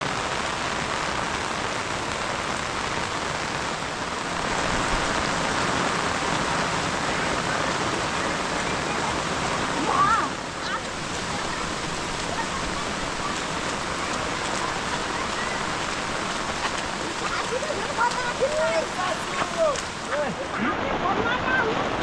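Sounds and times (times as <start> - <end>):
heavy rain hissing: 0.0 - 22.0.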